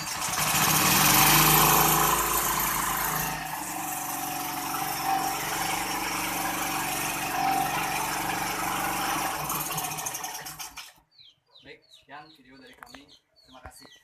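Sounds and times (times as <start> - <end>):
generator engine running: 0.0 - 10.9.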